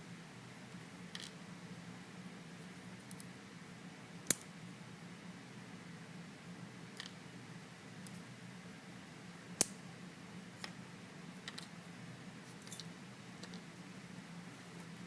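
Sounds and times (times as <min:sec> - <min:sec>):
metal lock parts clicking: 0:12.6 - 0:13.6.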